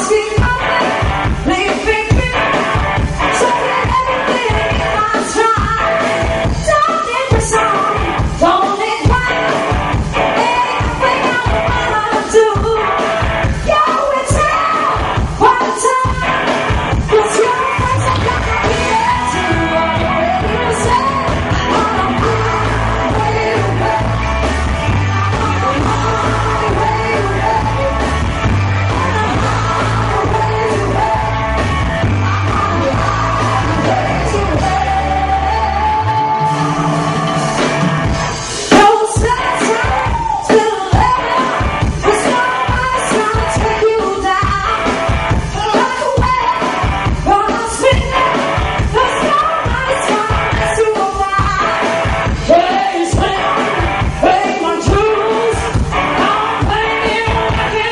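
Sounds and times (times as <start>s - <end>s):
live rock band playing: 0.0s - 57.9s
punchy drum beat: 0.0s - 57.9s
held bass line: 16.1s - 43.9s.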